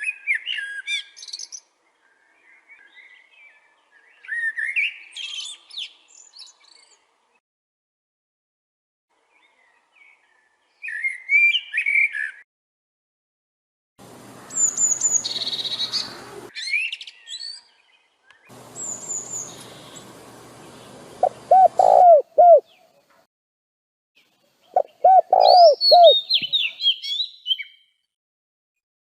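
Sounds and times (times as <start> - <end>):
songbirds chirping and warbling: 0.0 - 7.4, 9.1 - 12.4, 14.0 - 23.3, 24.2 - 28.1
faint background hiss: 18.5 - 23.2
dove cooing: 21.0 - 22.7, 24.8 - 26.2.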